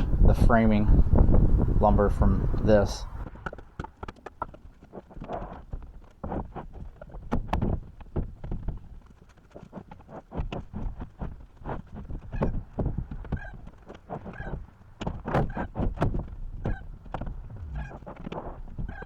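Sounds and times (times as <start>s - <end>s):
footsteps on wooden planks: 3.2s - 19.0s
floorboards squeaking: 9.6s - 19.0s.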